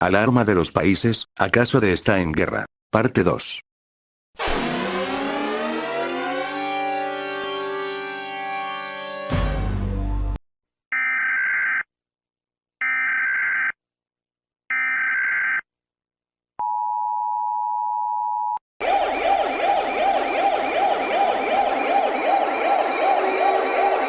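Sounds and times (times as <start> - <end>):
sirens wailing: 4.4 - 9.3, 18.8 - 24.0
steady alarm tone: 4.4 - 9.3, 18.8 - 24.0.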